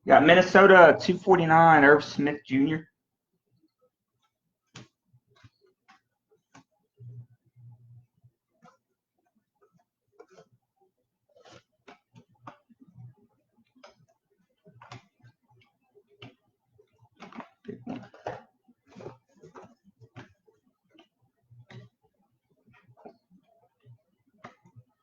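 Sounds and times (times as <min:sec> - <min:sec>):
trading cards clicking and sliding: 0:11.4 - 0:12.6.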